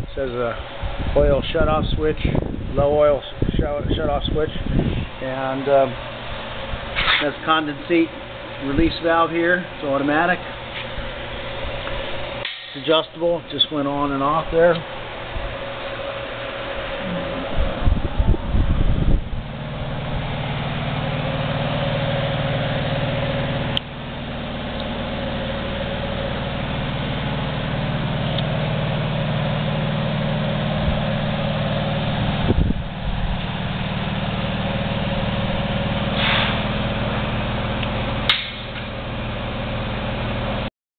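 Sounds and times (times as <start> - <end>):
air compressor running: 0.0 - 40.7
short hiss of air: 6.9 - 7.3, 36.1 - 36.7.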